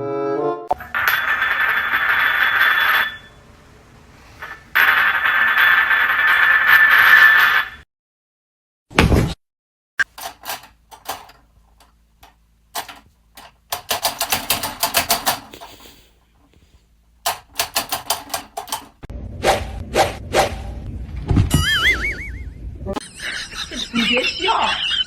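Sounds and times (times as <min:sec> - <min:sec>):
rapid sharp clicks: 0:10.0 - 0:15.9, 0:17.3 - 0:19.1.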